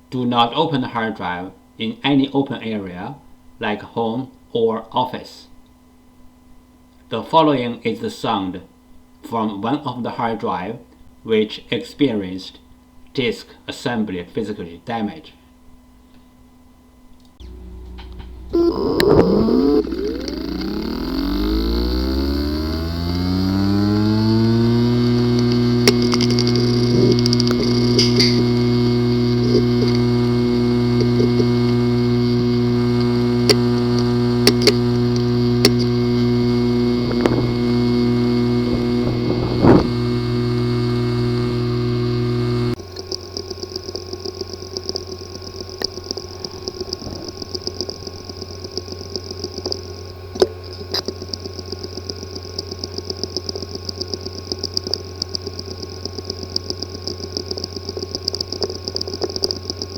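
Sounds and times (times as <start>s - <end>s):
hard drive whirring and ticking: 15.7s - 59.9s
hard drive buzzing: 17.4s - 59.9s
hard drive clicking: 17.4s - 59.9s.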